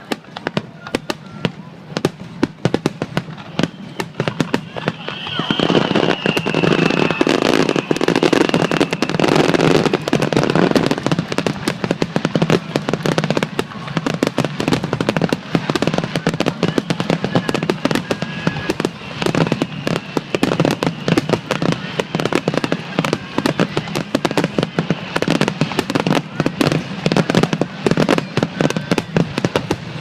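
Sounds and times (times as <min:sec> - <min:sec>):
fireworks crackling: 0:00.0 - 0:30.0.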